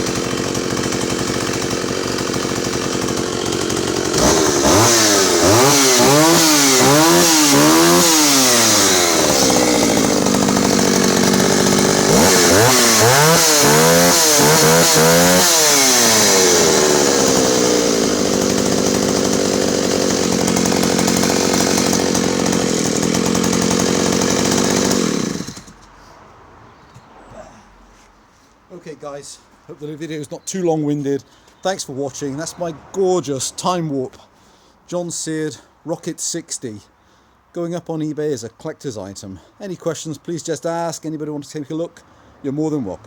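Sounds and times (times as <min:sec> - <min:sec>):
chainsaw revving and idling: 0:00.0 - 0:25.9.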